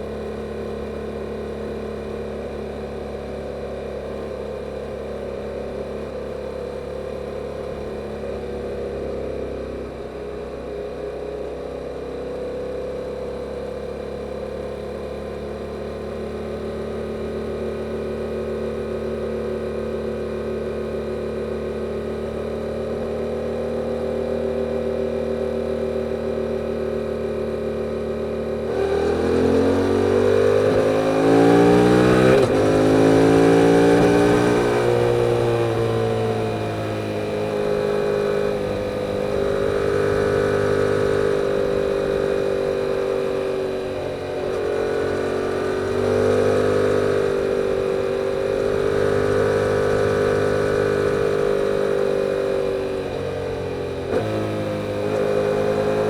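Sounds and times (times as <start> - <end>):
motorcycle engine accelerating: 12.5 - 56.0.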